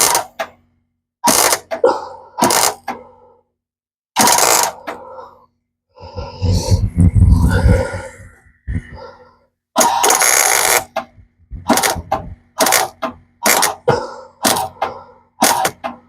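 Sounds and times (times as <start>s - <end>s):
wind rumbling on microphone: 6.1s - 9.0s.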